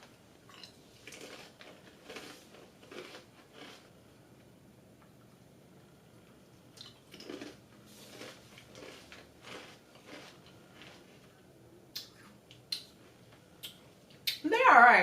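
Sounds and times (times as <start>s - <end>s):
crunchy chips being chewed: 0.5s - 3.9s, 6.7s - 11.3s.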